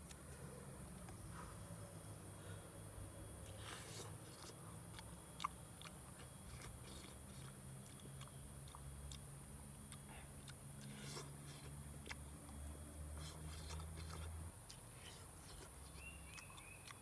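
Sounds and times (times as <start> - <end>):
person chewing food: 3.4 - 17.0.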